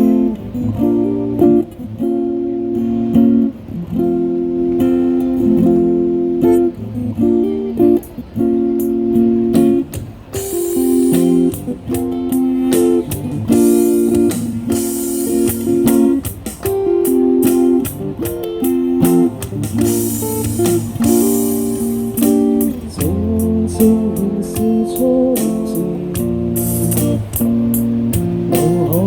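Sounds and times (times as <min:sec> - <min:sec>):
strummed guitar chords: 0:00.0 - 0:29.0
sharp percussive hits: 0:12.7 - 0:23.2.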